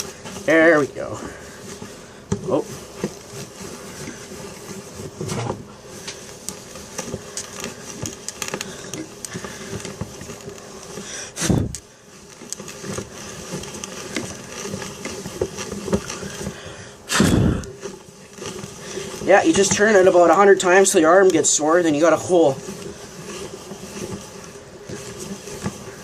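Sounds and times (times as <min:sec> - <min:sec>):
hand drill gears clicking and rattling: 0:06.0 - 0:26.0.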